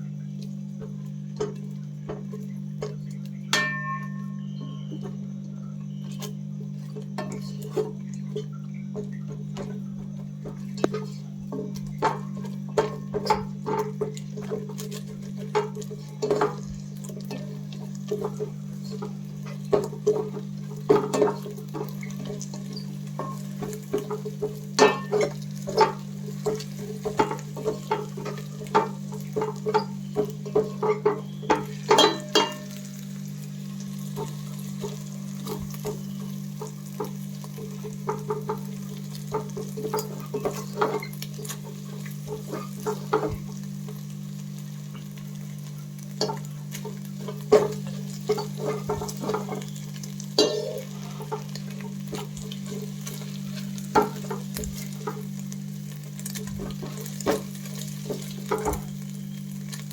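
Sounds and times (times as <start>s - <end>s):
steady low hum: 0.0s - 58.0s
eggs frying in oil: 0.0s - 59.9s
spatula striking a pan: 0.8s - 5.2s, 10.4s - 32.9s, 34.0s - 43.4s, 46.2s - 49.8s, 50.4s - 55.2s.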